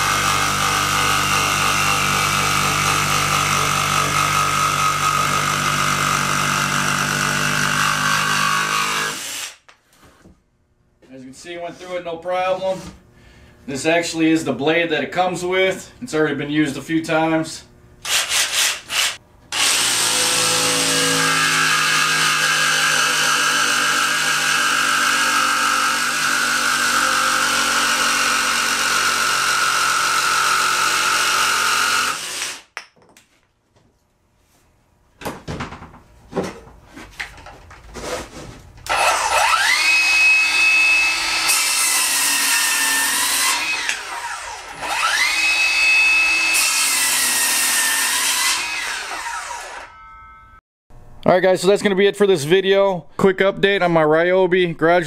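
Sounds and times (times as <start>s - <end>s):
power tool cutting wood: 0.0s - 9.6s, 18.0s - 32.7s, 38.8s - 50.0s.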